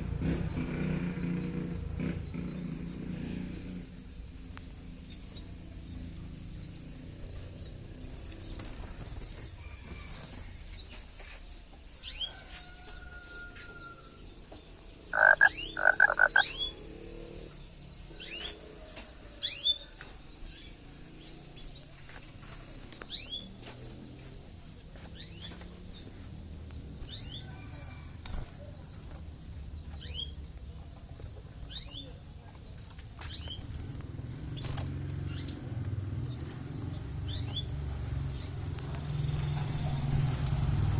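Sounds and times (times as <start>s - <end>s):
canary chirping: 15.2s - 16.8s.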